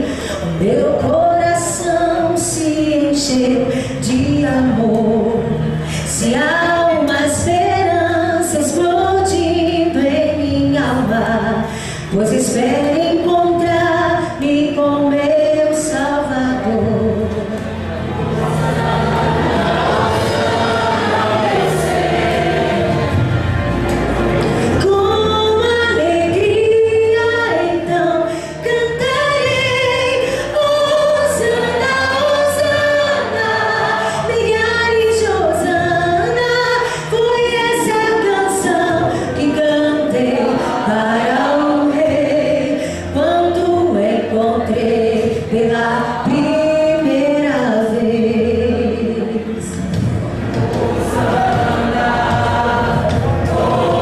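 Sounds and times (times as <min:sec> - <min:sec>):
choir singing a hymn: 0:15.3 - 0:26.4, 0:29.0 - 0:54.0
instrumental accompaniment: 0:16.3 - 0:34.5, 0:49.0 - 0:54.0.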